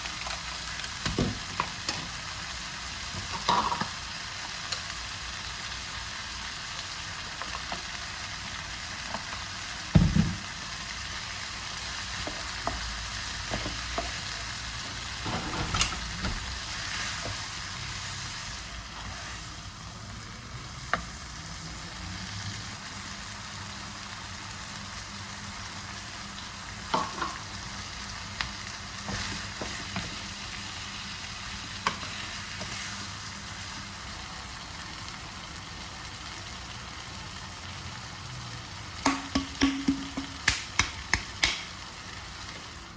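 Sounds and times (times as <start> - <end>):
food sizzling in a frying pan: 0.0 - 42.9
utensil knocking against pan: 39.0 - 41.7.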